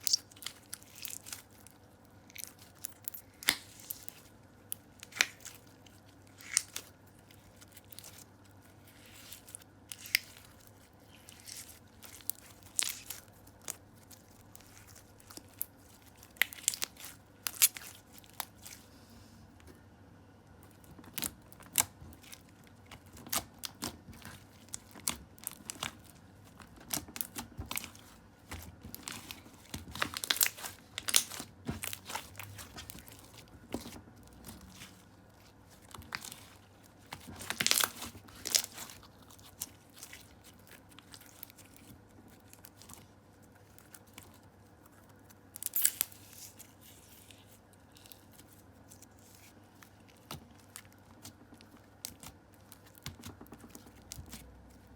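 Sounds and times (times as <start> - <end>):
slime crackling and popping: 0.0 - 18.8, 20.6 - 46.6, 47.8 - 54.9.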